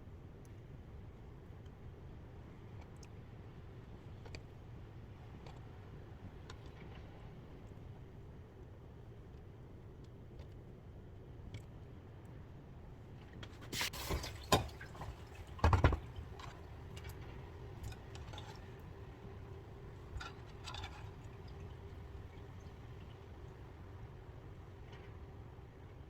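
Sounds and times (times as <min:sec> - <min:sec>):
liquid splashing and pouring: 0:13.8 - 0:16.7.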